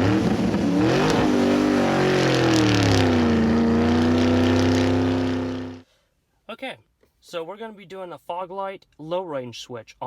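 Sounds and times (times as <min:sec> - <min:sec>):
car engine revving: 0:00.0 - 0:05.8.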